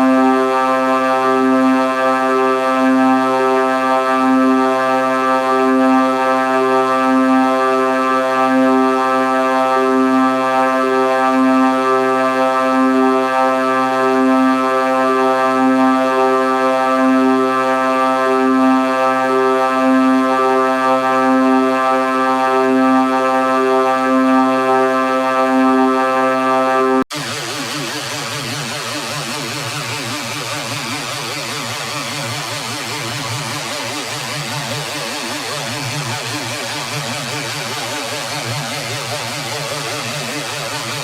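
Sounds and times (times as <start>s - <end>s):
low buzzy synthetic drone: 0.0s - 41.0s.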